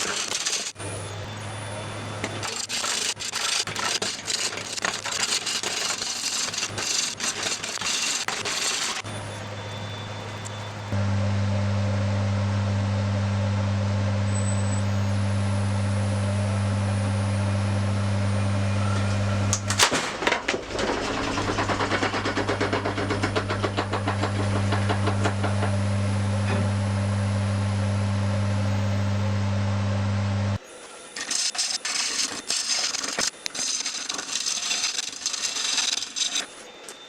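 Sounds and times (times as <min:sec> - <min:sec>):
wood lathe humming: 0:00.0 - 0:19.7, 0:20.8 - 0:30.6
turning tool knocking on wood: 0:20.4 - 0:25.8.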